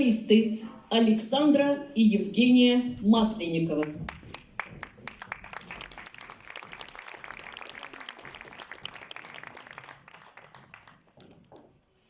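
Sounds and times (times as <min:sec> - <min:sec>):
audience applauding: 0:03.8 - 0:11.8.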